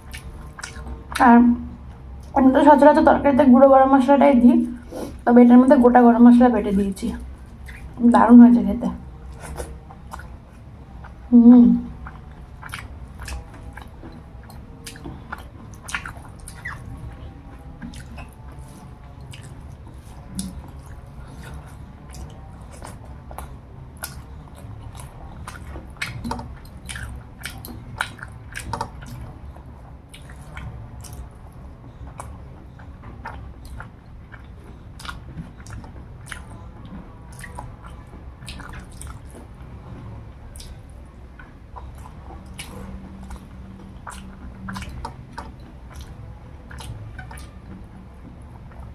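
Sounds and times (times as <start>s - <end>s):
wet mouth clicks and smacks: 0.0s - 1.2s, 7.2s - 8.0s, 9.3s - 10.4s, 11.9s - 29.4s, 30.1s - 39.5s, 40.5s - 48.9s
person chewing food: 0.0s - 2.4s, 7.2s - 8.0s, 9.0s - 48.9s
steady low hum: 0.0s - 48.9s.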